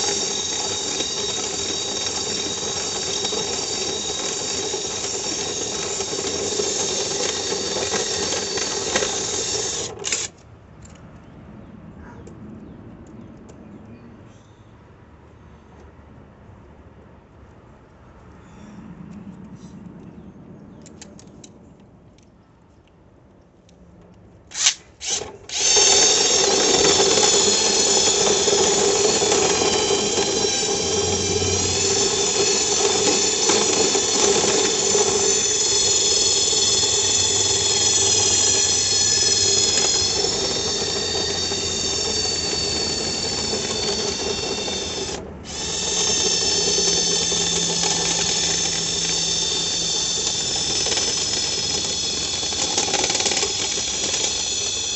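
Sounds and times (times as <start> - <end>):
power drill running: 0.0 - 10.4, 24.5 - 54.9.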